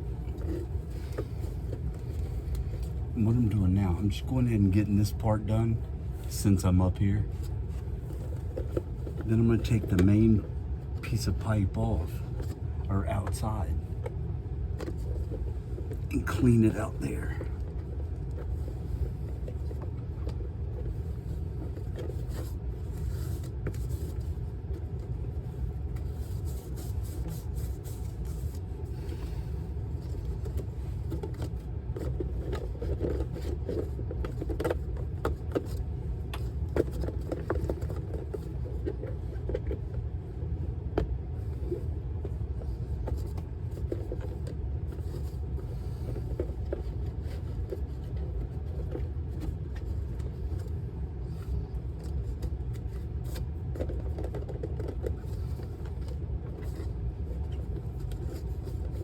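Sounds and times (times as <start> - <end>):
steady low rumble: 0.0 - 59.0.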